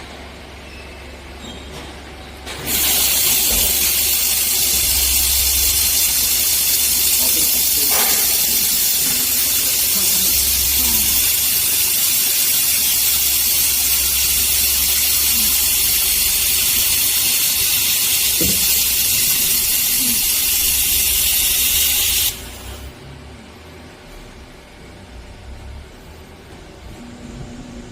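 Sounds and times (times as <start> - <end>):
laser welder hissing: 2.6 - 22.9.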